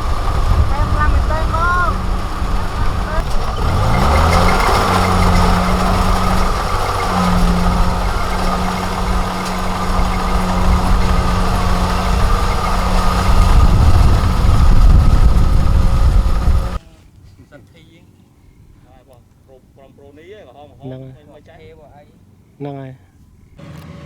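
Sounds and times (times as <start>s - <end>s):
diesel engine drone: 0.0s - 16.8s, 23.6s - 24.0s.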